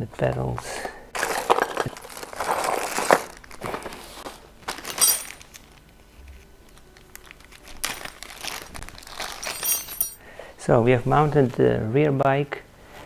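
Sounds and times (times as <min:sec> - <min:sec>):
packaging crinkling and rustling: 0:00.4 - 0:09.9.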